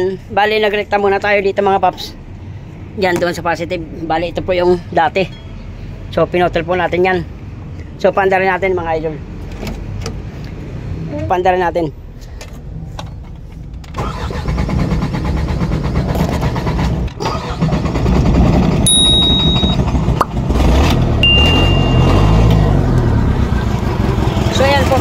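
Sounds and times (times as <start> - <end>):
diesel engine cranking and running: 12.3 - 25.0
short high tone: 18.9 - 19.9, 21.2 - 23.2.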